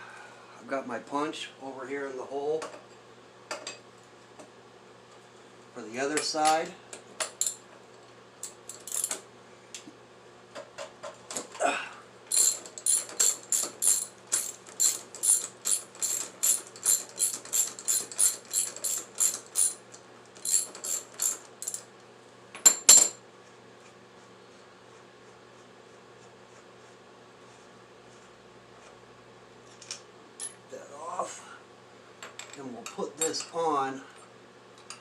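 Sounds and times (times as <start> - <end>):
ratchet wrench clicking: 12.3 - 19.8, 20.4 - 21.8.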